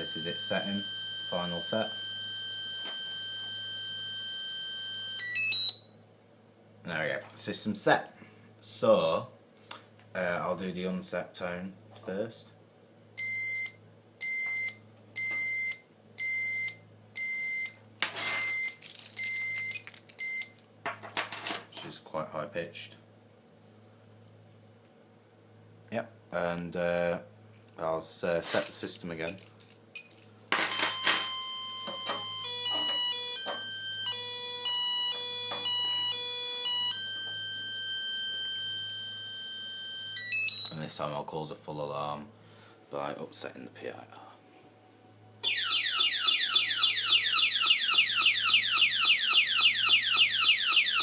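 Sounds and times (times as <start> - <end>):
alarm panel beeping: 0.0 - 5.9, 30.7 - 40.8, 45.4 - 51.0
keys rattling: 18.1 - 21.7, 28.4 - 33.1.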